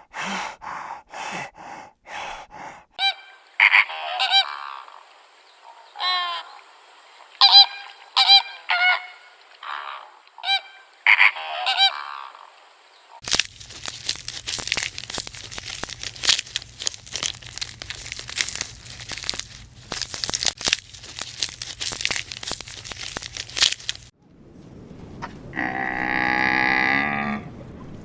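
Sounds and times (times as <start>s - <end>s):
breathy puffs: 0.0s - 3.0s
animal honking calls: 3.0s - 5.0s, 5.7s - 6.6s, 7.4s - 12.5s
crinkling noise: 12.6s - 28.0s.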